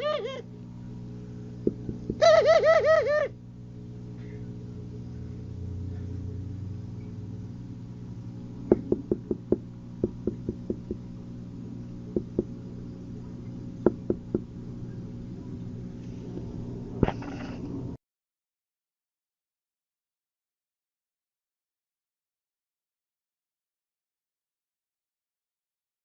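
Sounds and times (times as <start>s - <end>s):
pigeon cooing: 0.0s - 0.4s, 2.1s - 3.4s
steady low hum: 0.0s - 18.0s
sharp taps or knocks: 8.7s - 11.0s.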